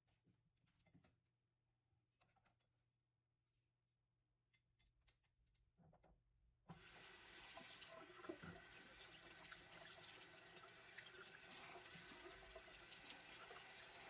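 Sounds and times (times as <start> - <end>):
tap water running into sink: 6.7 - 14.0.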